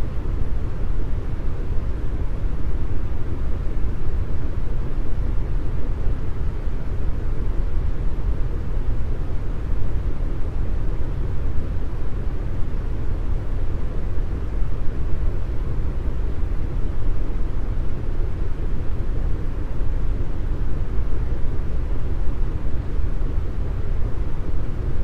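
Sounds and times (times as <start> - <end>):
deep brown noise hiss: 0.0 - 25.0.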